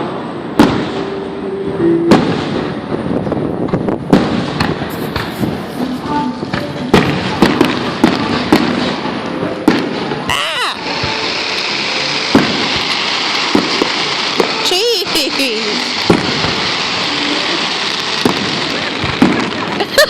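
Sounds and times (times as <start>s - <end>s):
noisy background: 0.0s - 19.8s
firework bangs: 0.0s - 20.0s
small firework pops: 3.7s - 9.0s, 9.6s - 9.9s, 12.3s - 19.9s.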